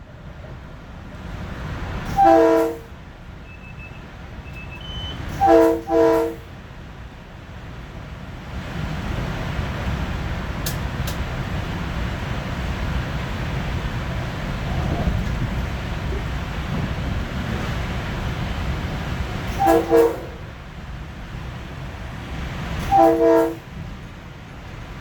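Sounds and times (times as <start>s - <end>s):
train wheels rumbling on rail: 0.0s - 25.0s
train horn: 2.0s - 3.0s, 4.7s - 6.6s, 19.5s - 20.6s, 22.8s - 23.8s.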